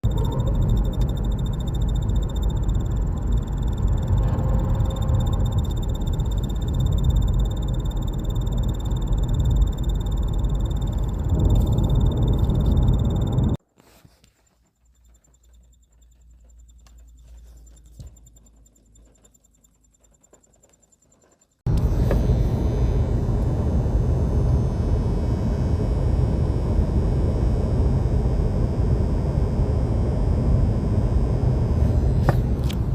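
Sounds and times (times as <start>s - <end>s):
faint low hum: 0.0s - 13.6s
road and engine rumble: 0.0s - 13.6s, 21.7s - 26.7s, 31.2s - 32.9s
small ticks: 0.1s - 13.5s, 14.2s - 21.6s.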